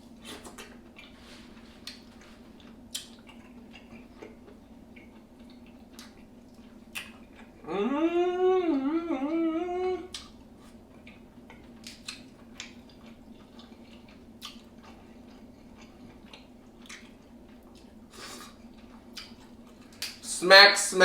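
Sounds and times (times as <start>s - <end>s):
chewing clicks and smacks: 0.2s - 1.2s, 1.8s - 7.6s, 10.1s - 20.2s
person humming mmm: 7.6s - 10.2s.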